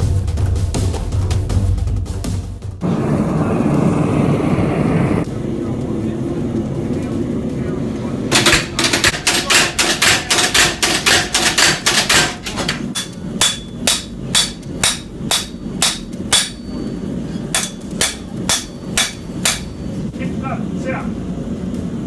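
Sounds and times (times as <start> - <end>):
hammer striking steel: 8.3 - 20.0.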